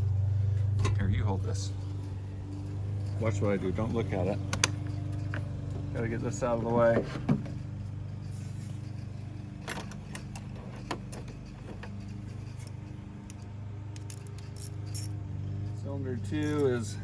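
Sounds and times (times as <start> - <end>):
steady low hum: 0.0 - 17.0
metallic clinks of hand tools: 14.0 - 17.0.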